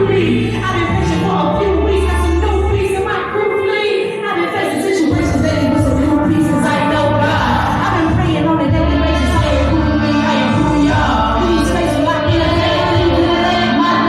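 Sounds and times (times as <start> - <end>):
strong bass line: 0.0 - 3.4, 5.1 - 14.0
person singing: 0.0 - 14.0
live band music: 5.1 - 14.0.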